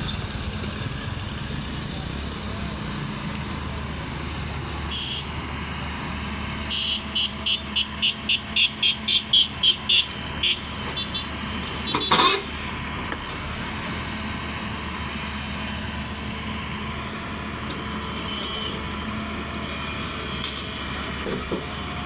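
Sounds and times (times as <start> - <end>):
diesel engine running: 0.0 - 22.0
loud horn blast: 4.9 - 5.4, 6.7 - 12.5.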